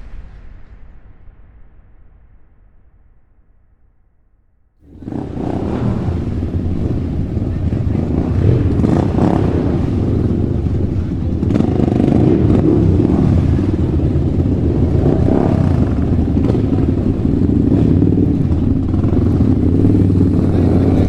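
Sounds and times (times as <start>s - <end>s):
vehicle engine running: 4.8s - 21.0s.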